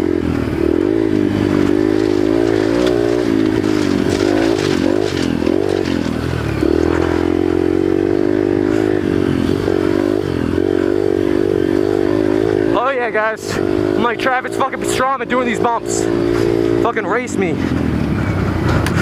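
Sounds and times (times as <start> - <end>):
motorcycle engine revving: 0.0 - 19.0
rattling clatter from bike: 1.1 - 7.4, 18.6 - 19.0.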